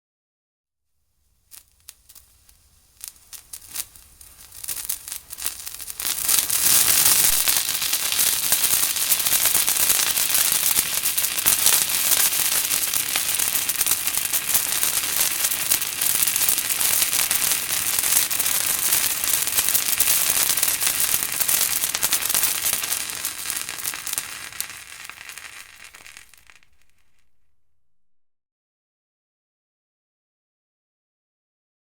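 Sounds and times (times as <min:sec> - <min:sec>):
firecrackers crackling: 0:01.3 - 0:28.0.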